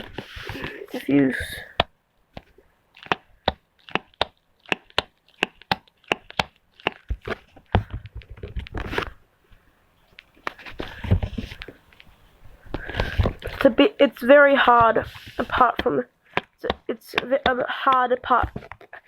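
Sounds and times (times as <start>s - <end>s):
rustling scrape: 0.0s - 1.6s, 14.8s - 15.7s.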